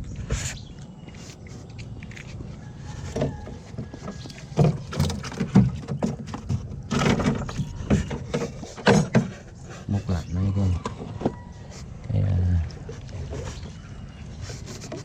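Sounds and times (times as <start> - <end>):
wooden knocks and thumps: 3.0 - 9.6.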